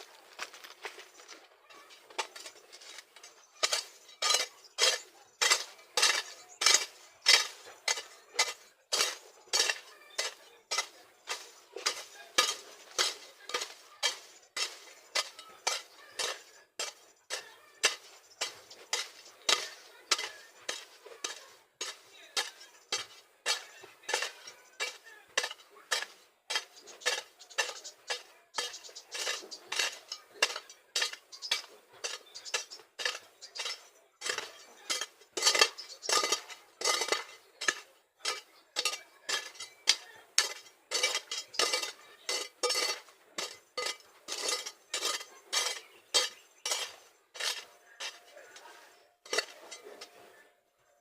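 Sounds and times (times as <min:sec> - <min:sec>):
hand tool scraping soil: 0:01.1 - 0:50.5.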